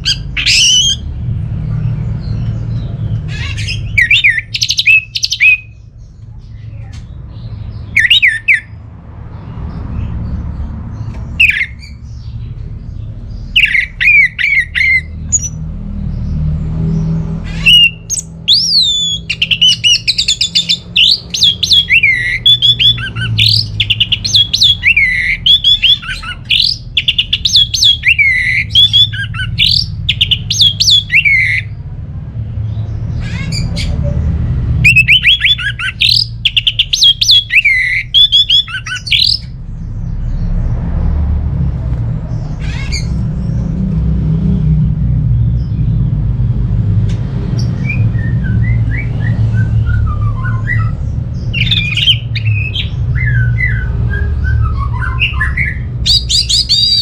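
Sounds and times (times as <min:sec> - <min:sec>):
steady low rumble: 0:00.0 - 0:57.0
thrush singing: 0:17.3 - 0:31.8, 0:34.7 - 0:39.6, 0:47.8 - 0:57.0.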